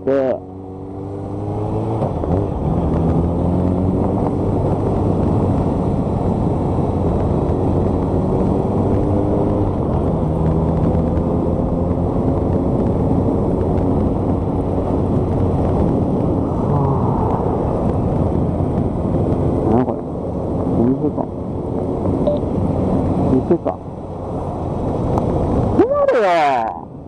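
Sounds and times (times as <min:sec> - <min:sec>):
wind rushing over microphone: 0:00.0 - 0:27.0
motorcycle engine accelerating: 0:00.2 - 0:25.8.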